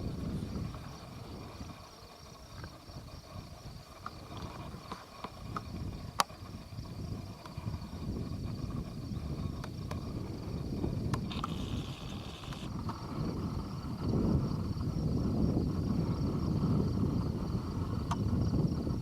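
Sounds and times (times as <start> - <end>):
wind rumbling on microphone: 0.0 - 19.0.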